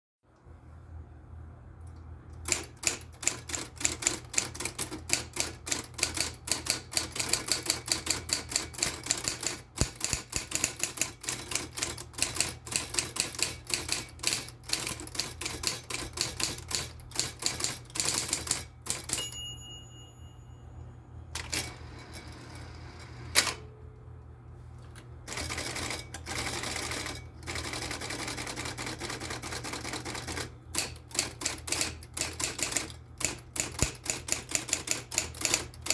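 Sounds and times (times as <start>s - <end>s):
typewriter motor hum: 2.4s - 19.2s, 21.3s - 23.7s, 25.3s - 35.9s
typewriter key strikes: 2.5s - 19.3s, 30.8s - 35.9s
typewriter bell ring: 17.2s - 22.6s.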